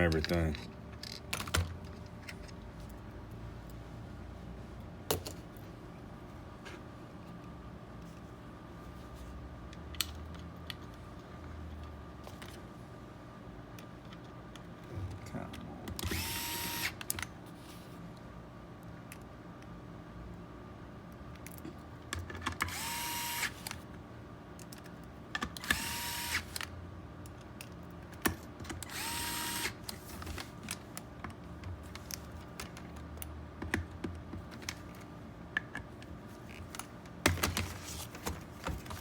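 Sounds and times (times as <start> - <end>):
clicks and knocks of parts: 0.1 - 3.0
cordless drill whine: 16.0 - 17.0, 22.7 - 23.6, 25.6 - 26.6, 28.9 - 29.8.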